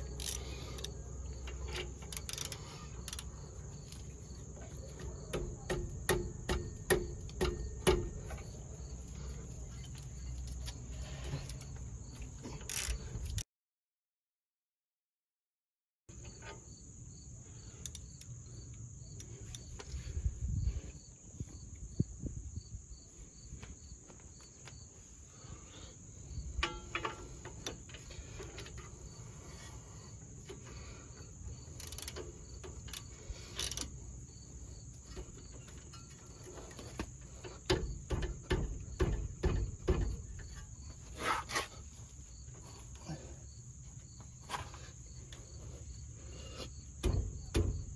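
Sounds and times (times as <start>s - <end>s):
insects trilling: 0.0s - 13.4s, 16.1s - 47.9s
knocks and clatters: 35.1s - 41.0s, 47.0s - 47.9s.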